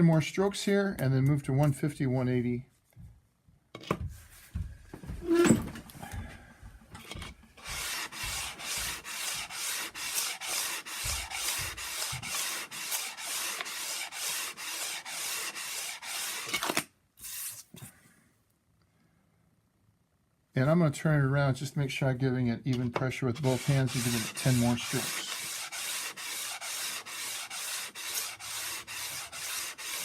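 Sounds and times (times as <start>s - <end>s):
blade rasping on sandpaper: 7.6s - 16.6s, 23.4s - 30.0s.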